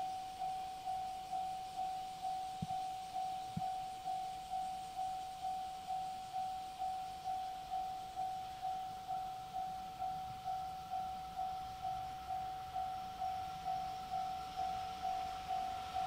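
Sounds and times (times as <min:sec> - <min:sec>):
level crossing warning bell: 0:00.0 - 0:16.0.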